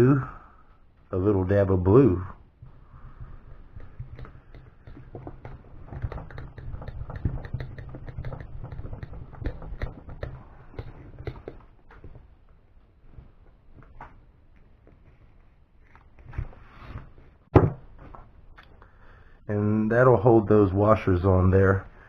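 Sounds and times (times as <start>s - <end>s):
small clicks taps and scrapes: 2.6s - 15.2s.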